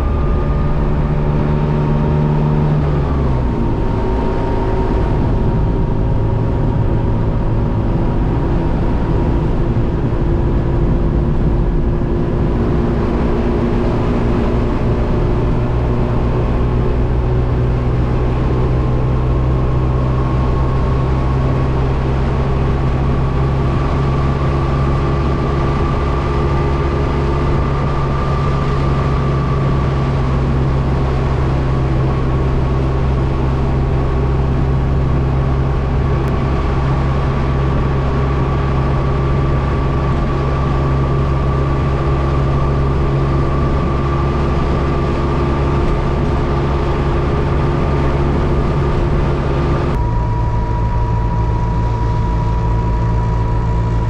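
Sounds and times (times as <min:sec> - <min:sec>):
two-stroke car engine running: 0:00.0 - 0:54.0
thin steady whine: 0:18.0 - 0:54.0.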